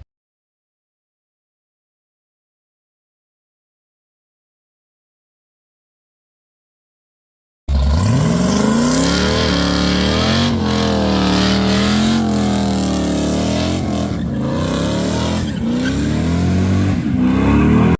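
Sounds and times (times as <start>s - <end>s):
car engine revving: 7.7s - 17.9s.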